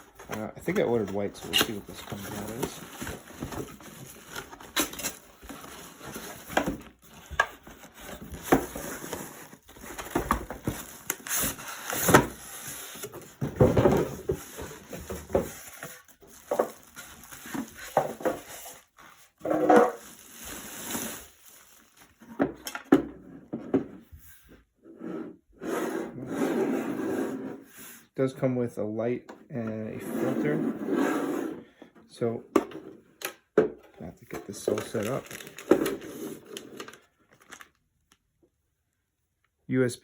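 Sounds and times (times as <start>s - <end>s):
cardboard box being unpacked: 0.0s - 22.3s, 34.3s - 37.8s.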